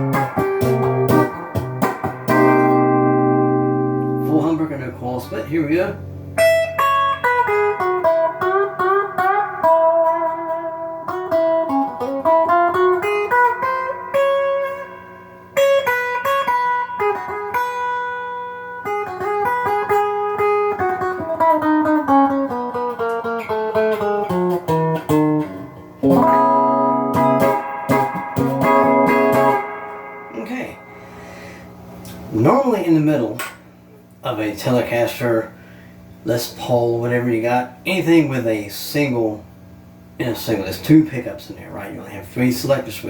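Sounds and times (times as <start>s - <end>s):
electric guitar strummed chords: 0.0s - 34.1s
electric guitar single-note licks: 0.0s - 34.2s.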